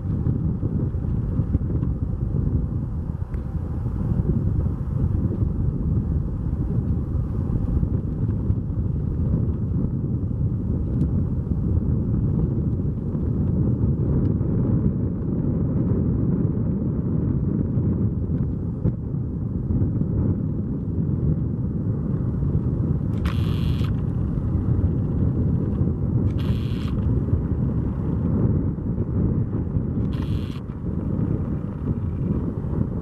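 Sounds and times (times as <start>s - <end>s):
jet landing rumble: 17.3s - 33.0s.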